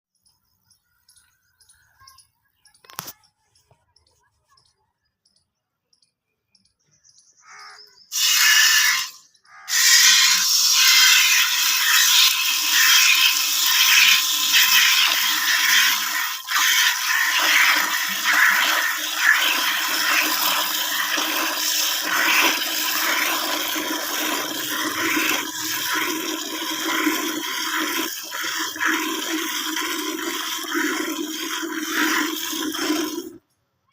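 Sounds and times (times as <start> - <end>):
milk squirting into a pail: 8.1 - 33.4.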